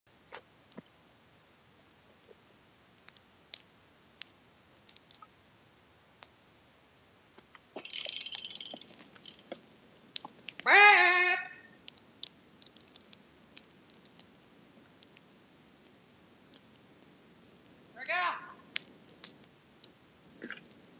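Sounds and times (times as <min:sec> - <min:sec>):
faint clicks: 0:01.8 - 0:05.3, 0:07.4 - 0:10.7, 0:11.8 - 0:16.9, 0:18.7 - 0:20.9
neck joints cracking: 0:07.4 - 0:10.7, 0:11.9 - 0:14.4.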